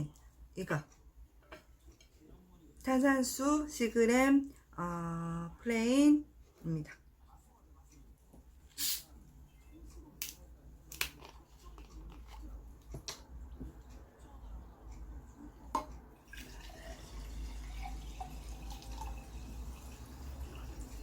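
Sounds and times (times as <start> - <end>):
sparkling water fizzing: 16.2 - 21.0.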